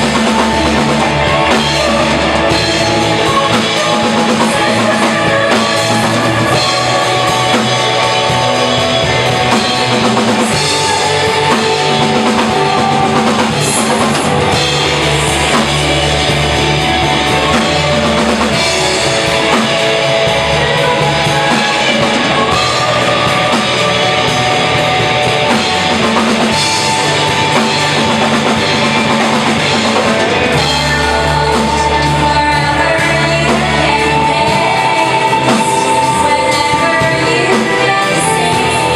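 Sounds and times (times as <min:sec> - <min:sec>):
bass guitar: 0:00.0 - 0:38.9
drum kit: 0:00.0 - 0:38.9
electric guitar: 0:00.0 - 0:38.9.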